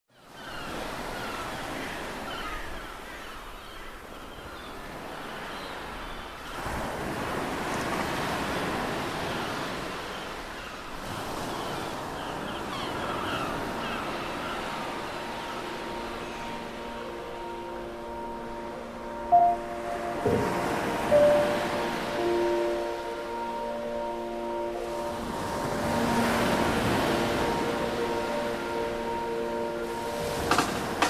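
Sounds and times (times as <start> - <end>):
ocean surf washing: 0.4 - 31.0.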